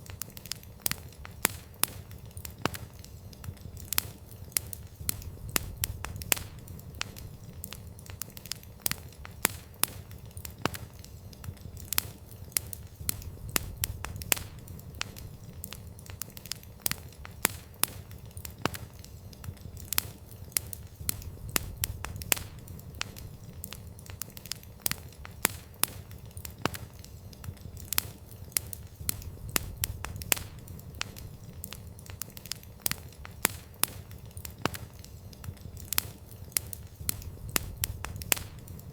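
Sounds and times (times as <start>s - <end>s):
campfire crackling: 0.0s - 38.9s
low rumble of flames: 0.0s - 38.9s.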